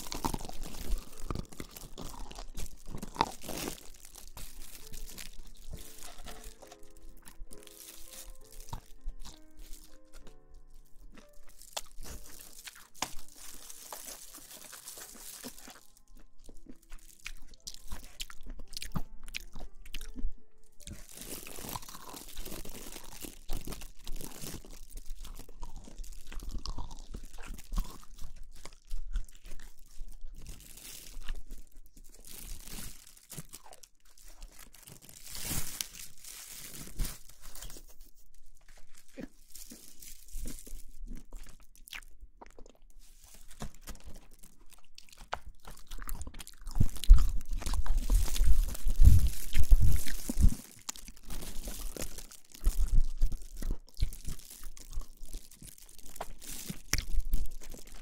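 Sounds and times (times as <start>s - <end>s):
close crunching and crackling: 0.0s - 58.0s.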